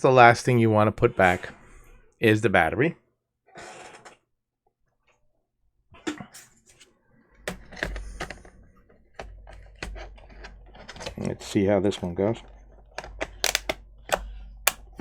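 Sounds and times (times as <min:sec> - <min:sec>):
plastic clicks and knocks: 0:13.5 - 0:15.0.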